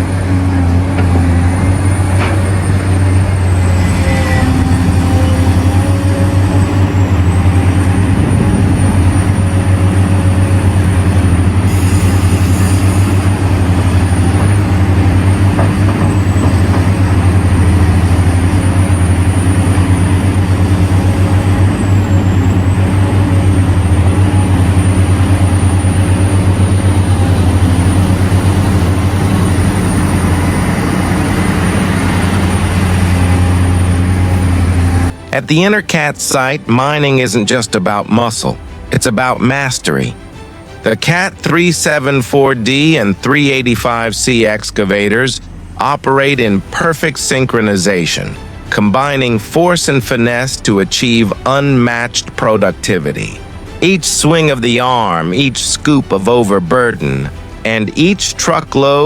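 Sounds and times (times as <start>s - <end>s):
thin high whine: 0.0s - 40.9s
excavator diesel engine drone: 0.0s - 59.0s.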